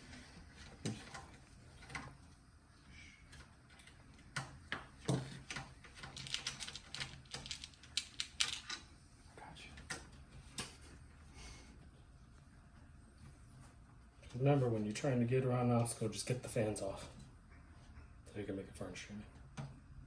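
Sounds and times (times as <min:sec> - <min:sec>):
computer parts clicking and knocking: 0:04.3 - 0:08.8.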